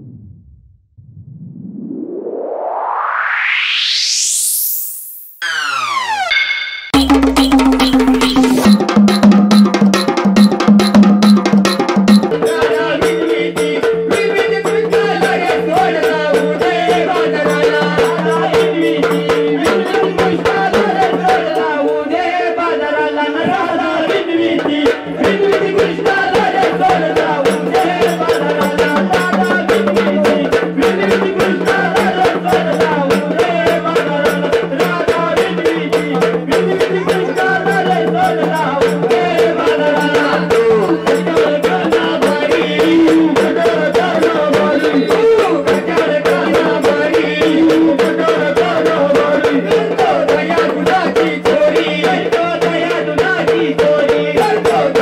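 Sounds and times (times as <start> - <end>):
held drone: 2.1 - 8.9
fast rattling percussion: 6.9 - 22.2, 23.5 - 55.0
folk singing: 12.1 - 55.0.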